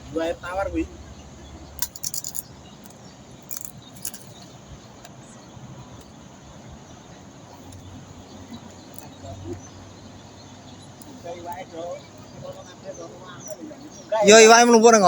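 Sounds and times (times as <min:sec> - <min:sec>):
light jangling clicks: 0:01.6 - 0:05.1, 0:08.6 - 0:09.5
short rattles: 0:01.8 - 0:04.6.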